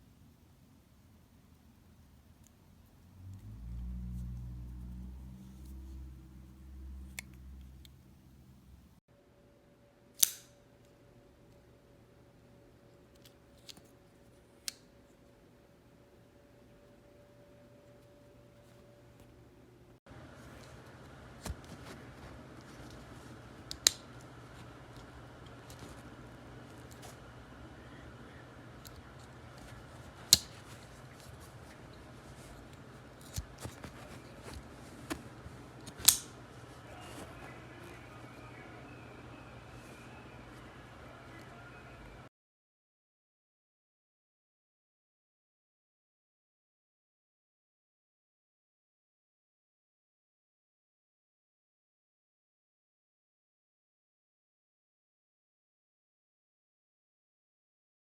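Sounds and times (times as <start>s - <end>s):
knife blade snapping open: 10.2s - 10.5s, 35.9s - 36.3s.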